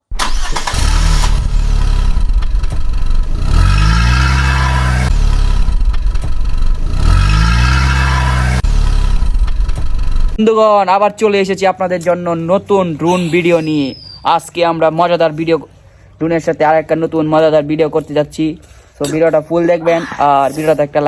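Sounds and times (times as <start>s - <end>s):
engine revving: 0.2s - 10.4s.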